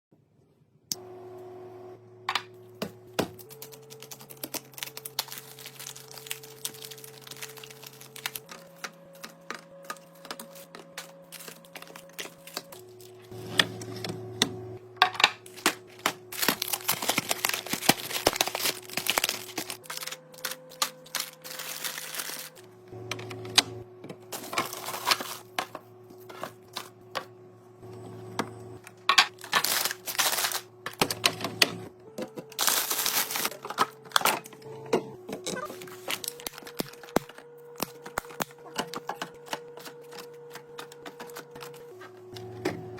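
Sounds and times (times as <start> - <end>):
plastic packaging clicks and crinkles: 3.3 - 13.3, 15.4 - 22.7, 29.1 - 34.6, 35.4 - 42.4.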